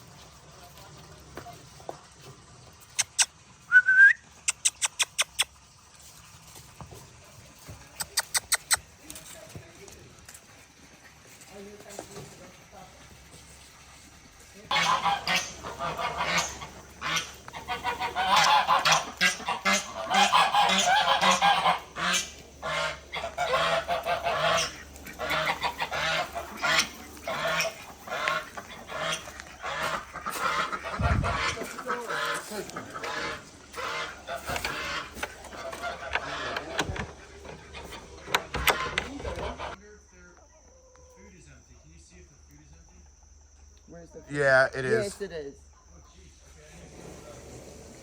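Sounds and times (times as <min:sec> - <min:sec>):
poultry calling: 0:14.2 - 0:39.8.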